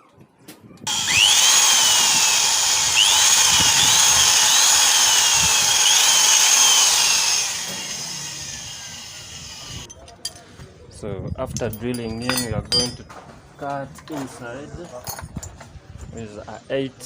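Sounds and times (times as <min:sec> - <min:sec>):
electric hand drill whining: 0:00.9 - 0:09.9.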